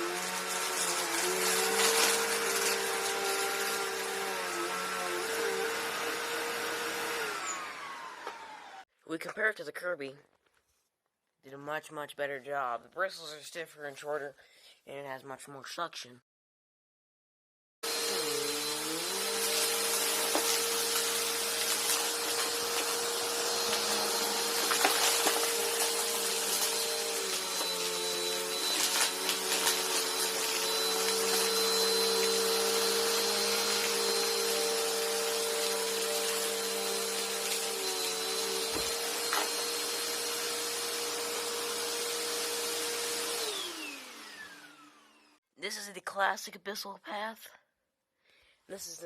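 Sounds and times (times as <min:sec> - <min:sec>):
vacuum cleaner motor whine: 0:00.0 - 0:08.8, 0:17.8 - 0:45.4.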